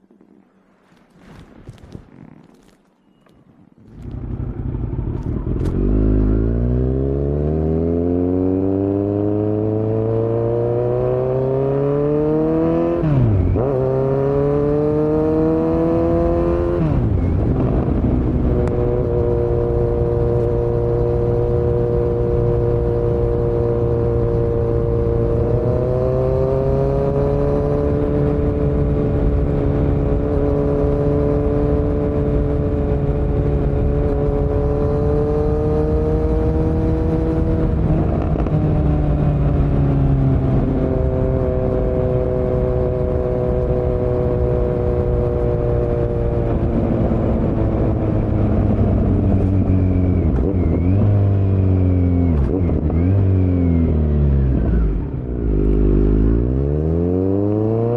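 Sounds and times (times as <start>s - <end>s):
motorcycle engine accelerating: 3.8s - 57.9s.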